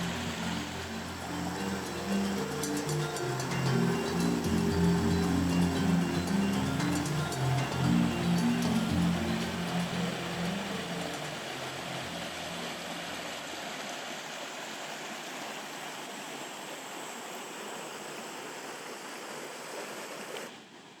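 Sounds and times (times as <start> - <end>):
background music: 0.0 - 13.1
stream and waterfalls rushing: 0.0 - 21.0.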